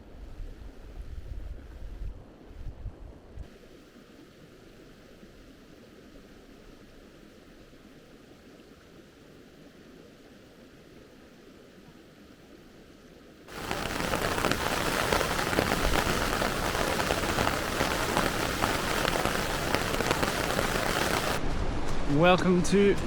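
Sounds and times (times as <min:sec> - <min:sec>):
faint quiet hiss: 0:00.0 - 0:23.0
heavy rain hitting a surface: 0:13.5 - 0:21.5.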